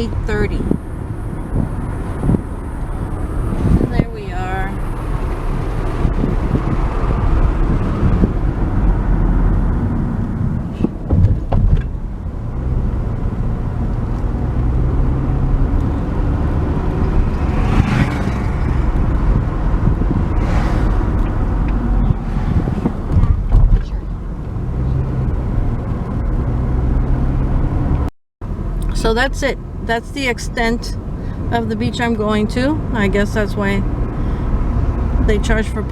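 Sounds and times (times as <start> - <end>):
car engine and tyres rumbling: 0.0 - 35.9
short thumps: 10.7 - 12.0, 16.8 - 24.5.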